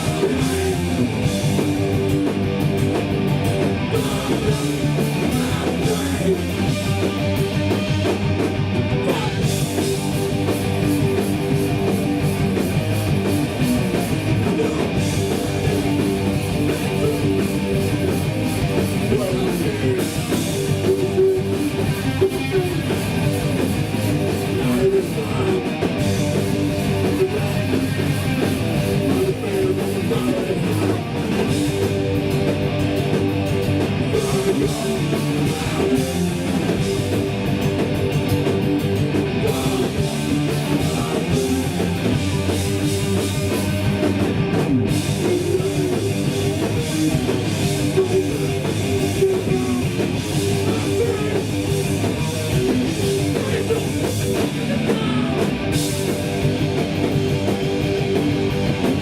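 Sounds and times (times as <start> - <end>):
bass guitar: 0.0 - 59.0
distorted electric guitars: 0.0 - 59.0
drums: 0.0 - 59.0.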